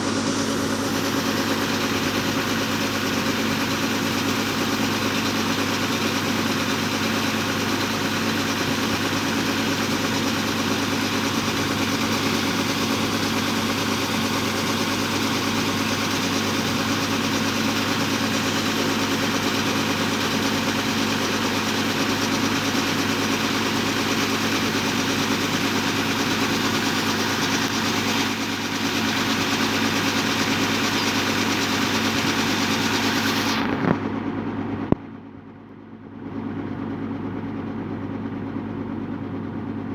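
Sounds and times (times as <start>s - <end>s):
harvester engine running under load: 0.0s - 39.9s.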